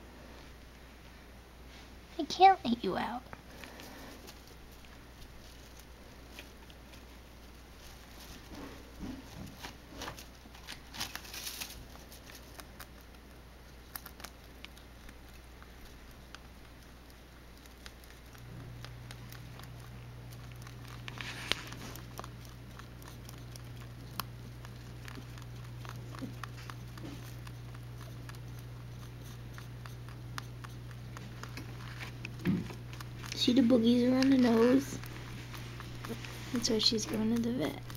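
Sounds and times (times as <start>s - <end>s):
low steady hum: 0.0s - 37.9s
rabbit rustling in bedding: 3.5s - 12.9s, 18.4s - 28.4s, 30.4s - 37.9s.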